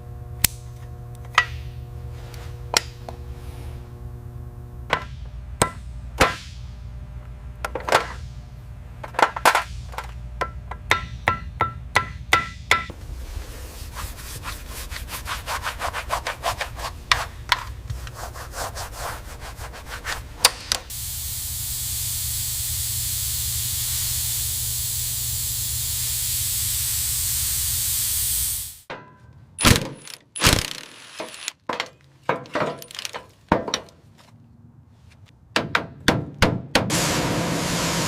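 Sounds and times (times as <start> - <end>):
low rumble: 12.9 - 15.0
spraying hiss: 20.9 - 28.9
tools knocking and clunking: 28.9 - 30.4, 31.2 - 34.4, 35.4 - 36.9.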